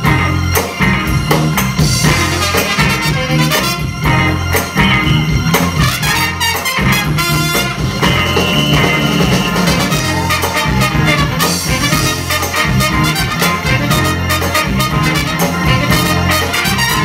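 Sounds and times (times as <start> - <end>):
soul band playing: 0.0 - 17.0
drum beat: 1.2 - 4.2, 5.4 - 17.0
horn holding long note: 5.9 - 17.0.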